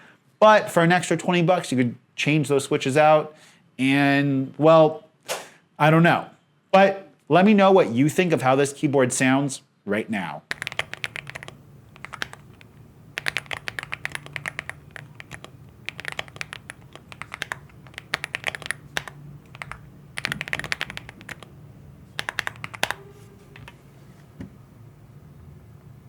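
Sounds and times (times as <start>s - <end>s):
mechanical keyboard typing: 10.5s - 23.8s.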